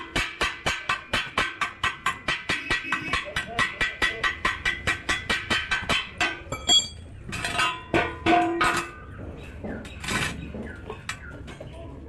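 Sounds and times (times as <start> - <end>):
metal clinking and tapping: 3.4 - 9.0.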